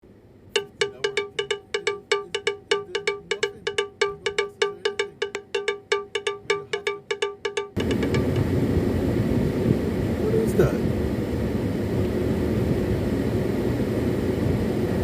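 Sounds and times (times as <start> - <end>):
bell-like percussion notes: 0.6 - 8.6.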